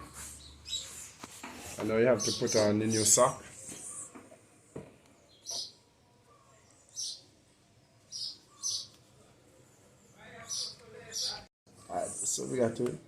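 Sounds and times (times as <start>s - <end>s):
bird chirping: 0.0s - 1.2s, 1.8s - 12.7s.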